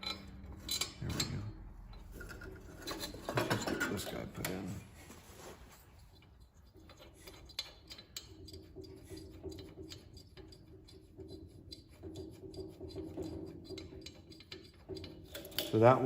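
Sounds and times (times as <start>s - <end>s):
bolt clicking and rubbing: 6.0s - 15.8s.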